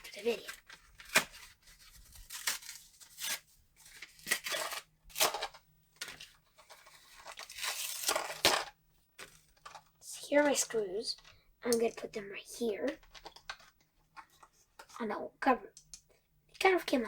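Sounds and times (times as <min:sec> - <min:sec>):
packaging rustling: 0:00.0 - 0:09.9
packaging crackling and tearing: 0:00.1 - 0:09.4.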